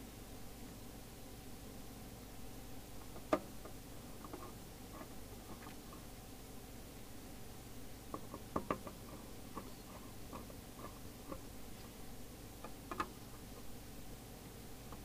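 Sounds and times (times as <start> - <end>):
low steady hum: 0.0 - 15.0
clicks and taps of plastic parts: 8.1 - 11.4, 12.6 - 13.2.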